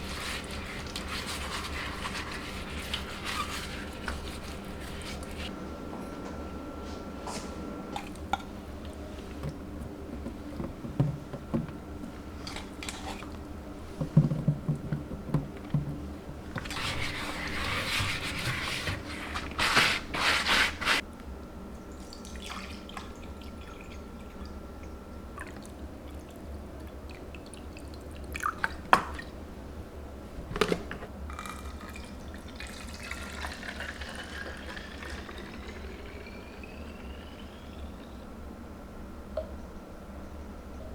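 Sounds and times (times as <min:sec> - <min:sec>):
liquid filling a container: 0:31.3 - 0:38.2
water pouring: 0:31.3 - 0:38.2.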